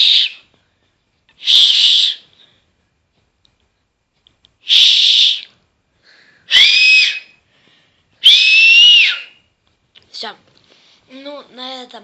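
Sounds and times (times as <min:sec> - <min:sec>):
loud finger whistle: 0:00.0 - 0:00.5, 0:01.4 - 0:02.3, 0:04.6 - 0:05.6, 0:06.5 - 0:07.4, 0:08.2 - 0:09.5.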